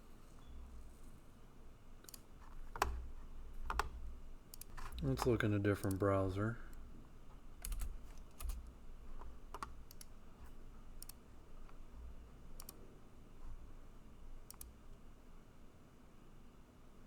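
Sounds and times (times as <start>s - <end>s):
faint room noise: 0.0s - 17.0s
computer keys clicking: 2.0s - 6.0s, 7.6s - 11.8s, 12.6s - 12.8s, 14.4s - 14.8s.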